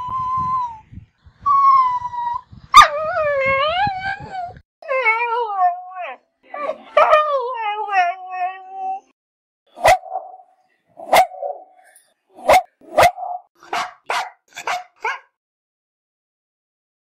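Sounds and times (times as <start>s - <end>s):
dog barking: 9.8s - 10.4s, 11.0s - 11.7s, 12.4s - 15.4s.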